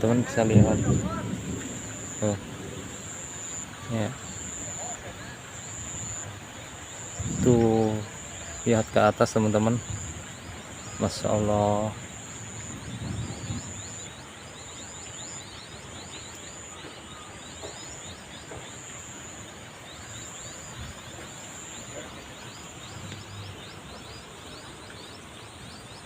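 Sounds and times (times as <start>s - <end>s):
high insect trill: 0.0s - 23.7s
background hiss: 0.0s - 26.0s.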